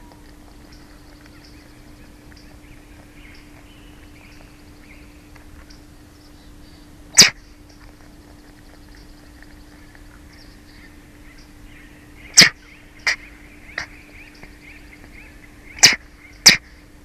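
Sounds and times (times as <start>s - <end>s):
small birds chirping: 0.0s - 17.0s
steady hum: 0.0s - 17.0s
eaglets sneezing: 7.1s - 7.6s, 12.3s - 14.0s, 15.6s - 16.8s.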